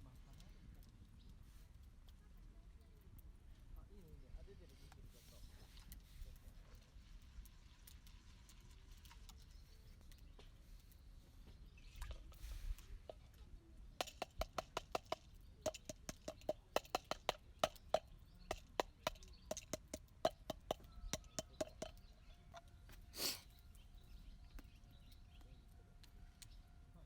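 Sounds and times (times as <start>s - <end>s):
sharp clicks and taps: 14.0s - 22.8s
short hiss: 23.1s - 23.5s.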